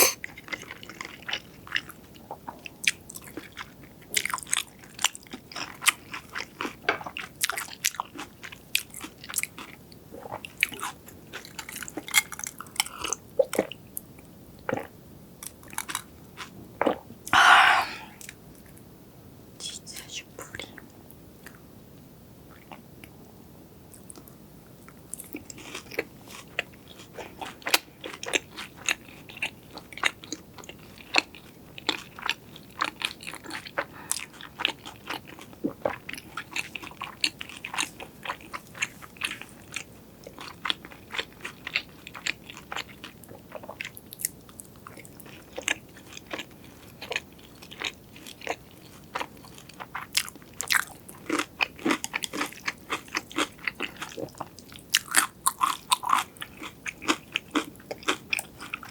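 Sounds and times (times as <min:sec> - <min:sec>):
crunching crispy fried food: 0:03.1 - 0:09.8, 0:10.5 - 0:13.2, 0:15.4 - 0:16.5, 0:44.0 - 0:58.9.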